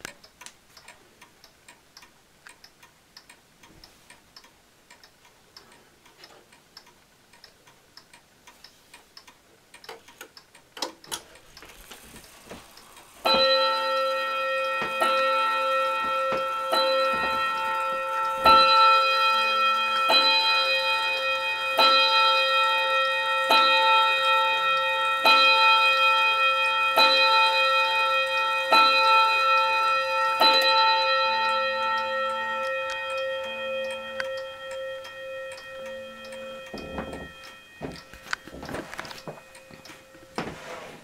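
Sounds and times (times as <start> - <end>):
clock ticking: 0.0 - 40.4
clock bell striking: 13.2 - 40.5
small knocks: 36.7 - 40.6.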